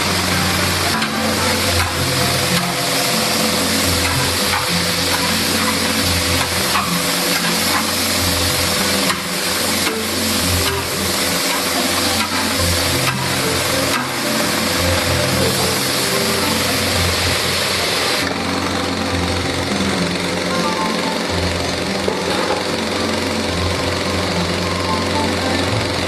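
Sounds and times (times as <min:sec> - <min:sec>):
food sizzling in a wok: 0:00.0 - 0:18.3.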